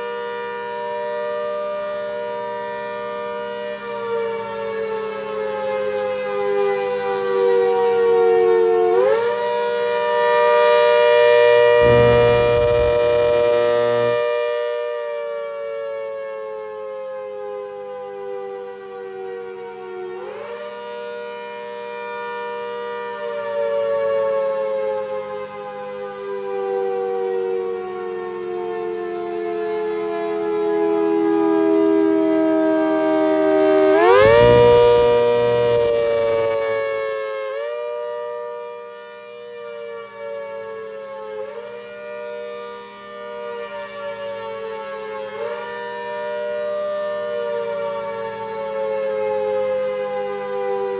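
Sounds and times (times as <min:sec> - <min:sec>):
two-tone warning siren: 0:00.0 - 0:50.9
low rumble: 0:11.8 - 0:14.2.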